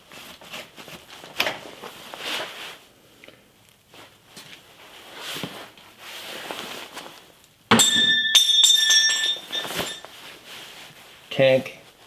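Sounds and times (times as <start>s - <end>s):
handling noises: 5.3s - 10.9s
metal part clanking and ringing: 7.7s - 10.1s.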